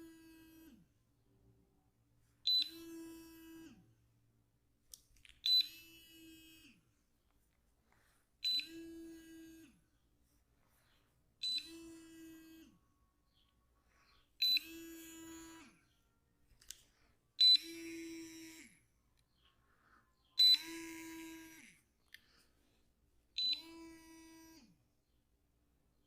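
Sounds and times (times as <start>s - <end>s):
ringing electronic tone: 20.4s - 21.5s.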